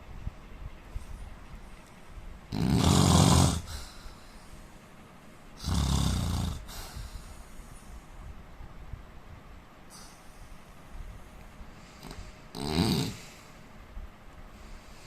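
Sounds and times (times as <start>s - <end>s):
quiet breathing: 0.8s - 8.8s, 9.7s - 15.0s
man snoring: 2.5s - 3.8s, 5.6s - 6.9s, 12.0s - 13.4s.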